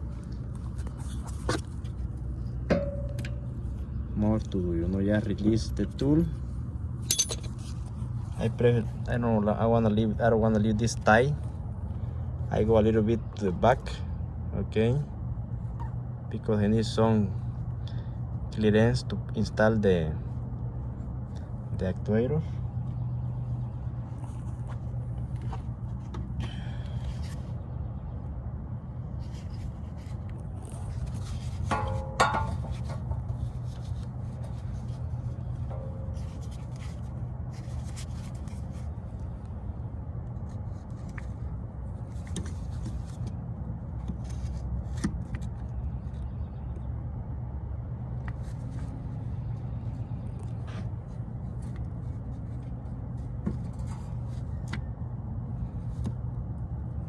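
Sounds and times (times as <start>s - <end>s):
steady low hum: 0.0s - 57.0s
ringing metallic clink: 7.1s - 7.5s
metal parts scraping and clicking: 7.1s - 7.8s.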